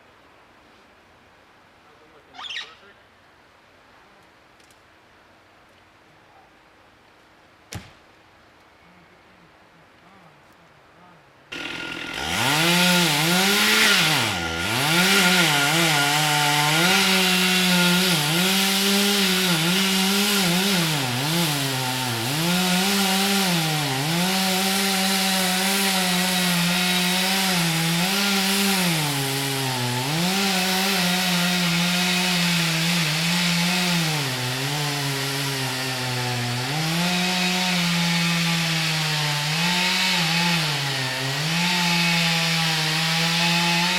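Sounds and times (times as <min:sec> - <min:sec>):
chainsaw cutting a tree: 0:11.5 - 0:43.9.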